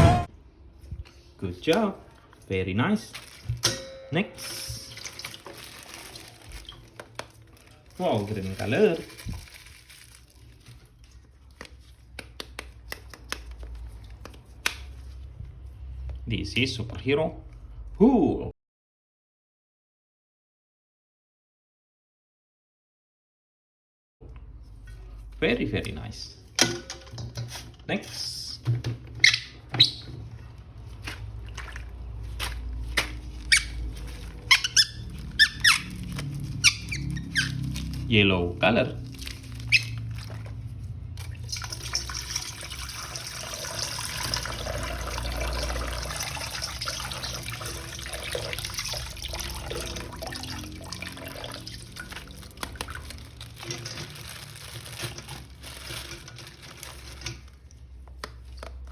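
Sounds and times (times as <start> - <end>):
packaging crinkling: 3.0 - 3.7, 4.4 - 12.2, 30.4 - 38.1, 38.9 - 58.9
plastic squeaking: 29.0 - 30.6, 33.2 - 38.1, 39.0 - 40.6.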